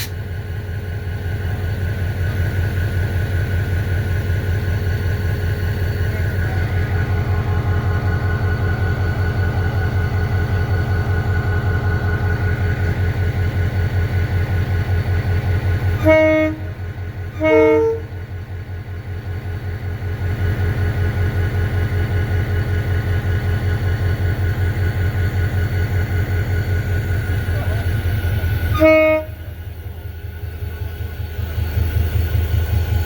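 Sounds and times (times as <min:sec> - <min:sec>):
diesel locomotive idling: 0:00.0 - 0:33.0
locomotive horn blasts: 0:16.0 - 0:18.2, 0:28.7 - 0:29.7.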